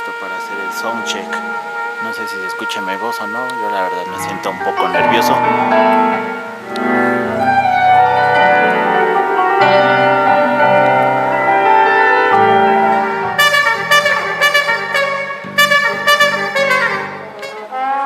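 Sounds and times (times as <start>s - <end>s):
live band playing: 0.0s - 18.0s
punchy brass stabs: 13.3s - 17.6s.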